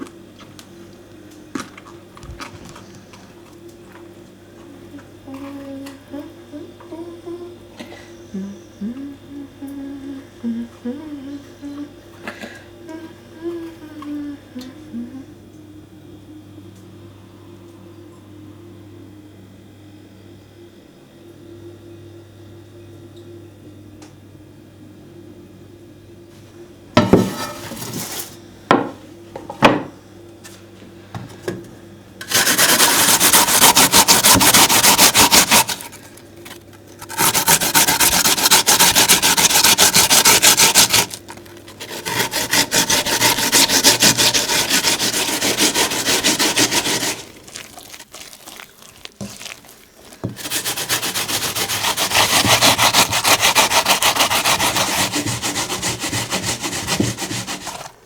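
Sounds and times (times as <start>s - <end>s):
rapid rasping strokes on wood: 32.3s - 58.0s.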